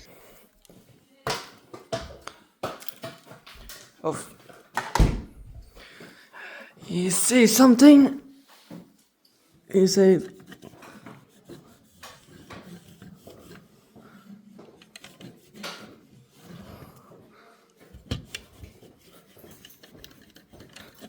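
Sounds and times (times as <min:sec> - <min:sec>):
handling noises with clicks and knocks: 0:00.0 - 0:06.2, 0:10.0 - 0:21.0.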